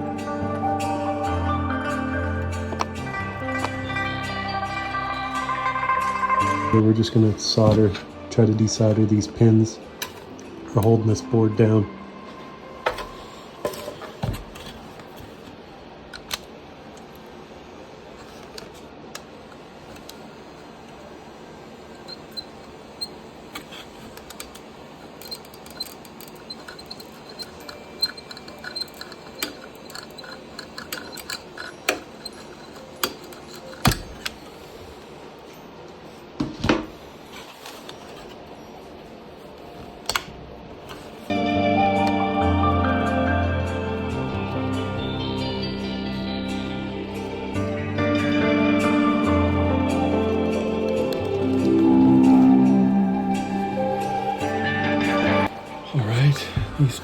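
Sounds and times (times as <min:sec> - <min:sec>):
music: 0:00.0 - 0:15.5, 0:41.2 - 0:57.0
steady low hiss: 0:00.0 - 0:57.0
tools clicking and tapping: 0:23.6 - 0:34.6.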